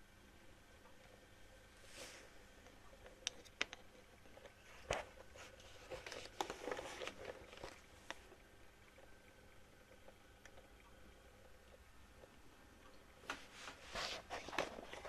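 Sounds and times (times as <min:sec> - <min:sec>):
soft rustling and tapping: 0:02.0 - 0:09.1.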